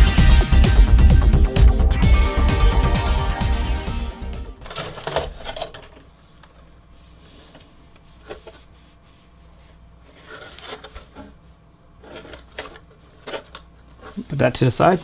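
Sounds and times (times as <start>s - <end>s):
handling noises: 4.6s - 6.6s
computer parts clicking and rubbing: 10.1s - 11.2s, 12.0s - 14.2s.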